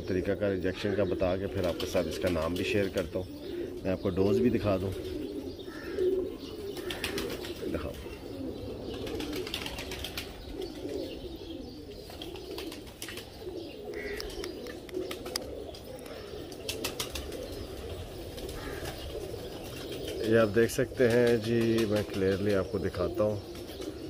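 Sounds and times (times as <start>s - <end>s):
pigeons cooing: 0.0s - 24.0s.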